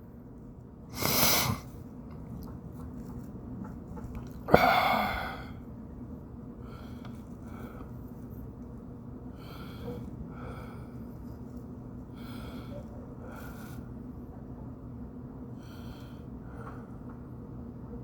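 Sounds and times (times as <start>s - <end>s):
steady low hum: 0.0s - 18.0s
man breathing close to microphone: 9.3s - 11.4s, 12.0s - 14.1s.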